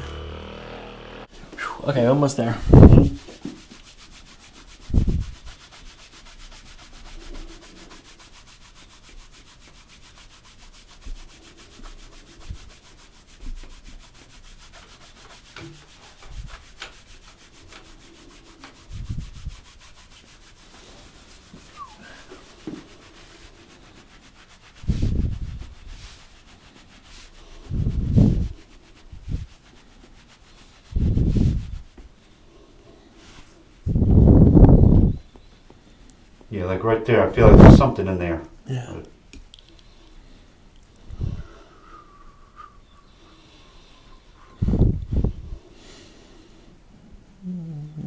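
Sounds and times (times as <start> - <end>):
hands rubbing on clothing: 0.0 - 40.2.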